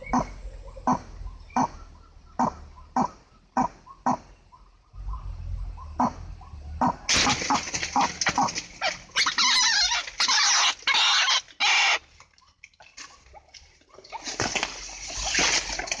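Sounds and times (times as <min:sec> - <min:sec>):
waterhen harsh calls: 0:06.8 - 0:12.2.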